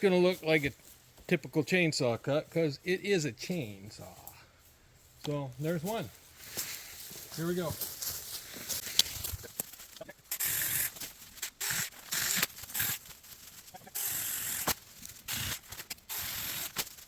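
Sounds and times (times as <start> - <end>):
battery chainsaw cutting wood: 10.3 - 13.0, 13.8 - 16.9.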